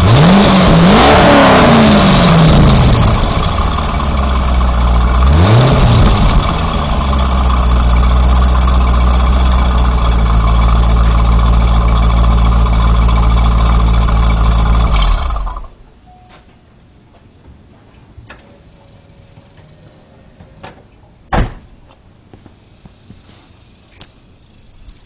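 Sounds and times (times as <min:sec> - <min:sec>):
car engine revving and idling: 0:00.0 - 0:15.8.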